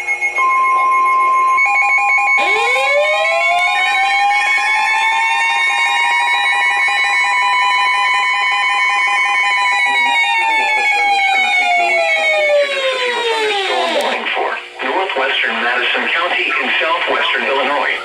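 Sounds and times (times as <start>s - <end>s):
siren winding up: 0.0s - 14.4s
weather-radio warning alarm tone: 0.0s - 18.0s.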